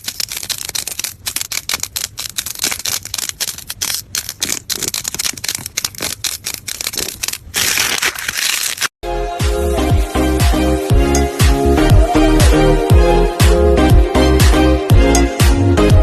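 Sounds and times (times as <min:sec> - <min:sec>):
crackling and popping clicks: 0:00.0 - 0:08.9
slime squished by hand: 0:00.0 - 0:08.9
music with a beat: 0:09.3 - 0:16.0.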